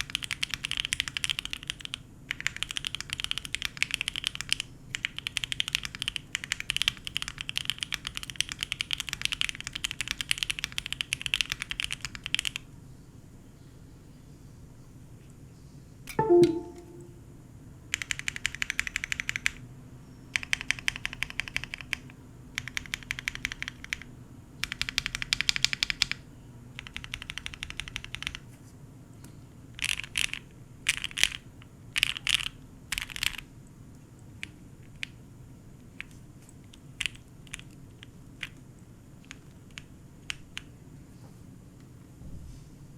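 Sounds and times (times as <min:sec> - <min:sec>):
mechanical keyboard typing: 0:00.0 - 0:12.6, 0:17.9 - 0:19.6, 0:20.4 - 0:26.2, 0:26.8 - 0:28.4, 0:29.8 - 0:31.4, 0:32.0 - 0:33.4, 0:37.0 - 0:37.8.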